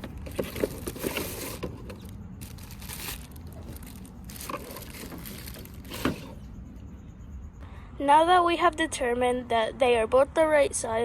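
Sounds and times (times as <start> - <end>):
air filters crinkling: 0.0 - 6.6.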